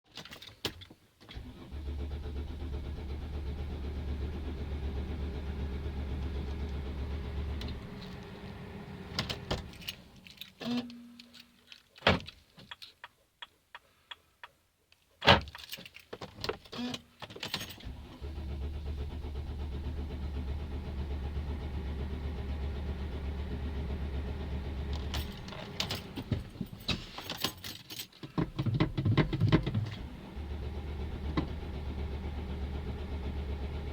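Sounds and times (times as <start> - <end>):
engine starter cranking: 1.3 - 11.0, 17.5 - 27.4.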